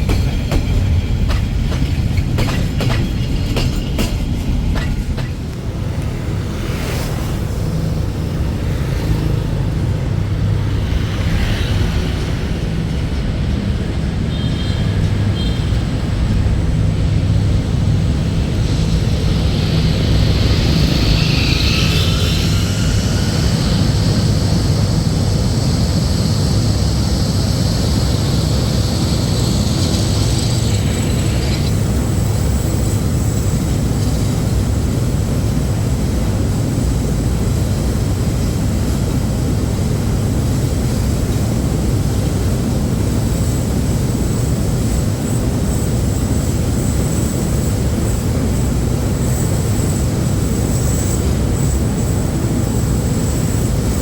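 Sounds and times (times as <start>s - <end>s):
diesel locomotive engine drone: 0.0s - 54.0s
train rumbling: 0.0s - 54.0s
high steady noise: 15.4s - 42.1s.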